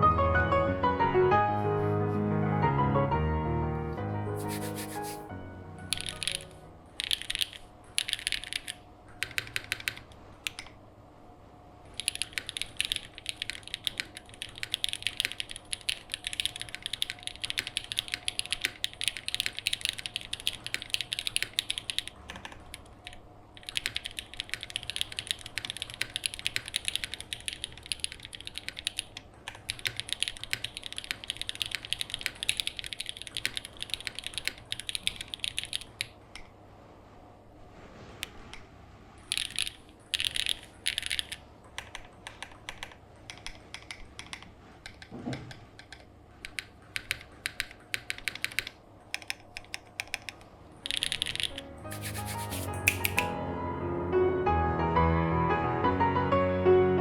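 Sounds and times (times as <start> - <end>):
mechanical keyboard typing: 5.9 - 10.8, 11.9 - 36.2, 39.2 - 53.3.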